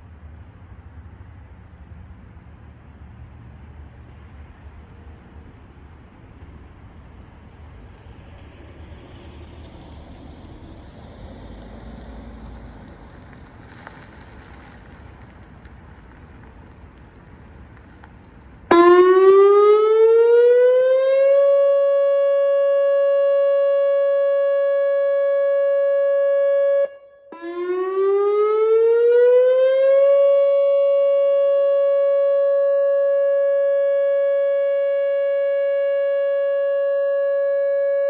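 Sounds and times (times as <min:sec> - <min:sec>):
outdoor warning siren tone: 0:18.7 - 0:38.0.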